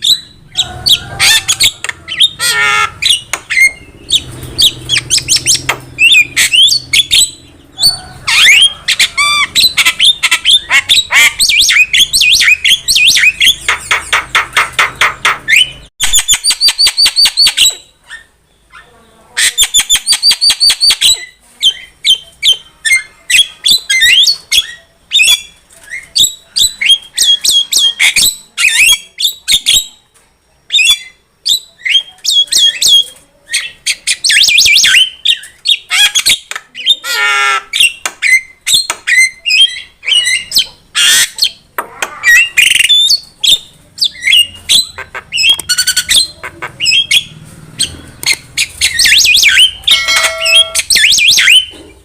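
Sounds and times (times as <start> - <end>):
harsh rasping bird call: 0.0 - 18.0, 33.6 - 38.4, 44.1 - 51.7
bird whistling and chattering: 0.0 - 30.0, 30.7 - 52.0.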